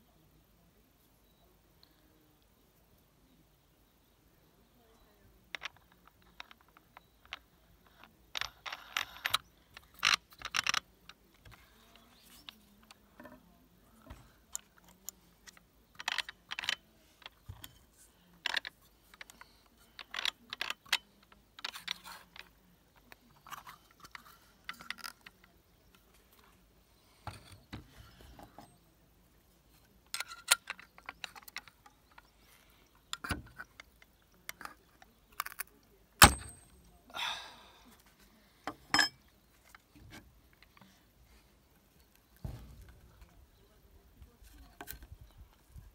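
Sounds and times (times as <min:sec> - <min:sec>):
metal tools clicking and clinking: 0:38.7 - 0:39.2.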